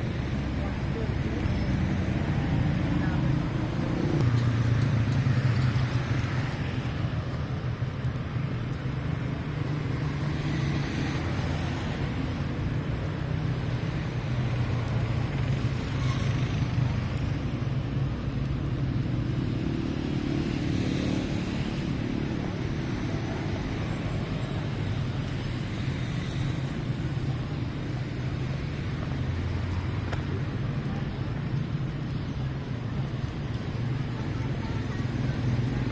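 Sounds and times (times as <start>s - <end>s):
cars and motorbikes passing: 0.0s - 35.9s.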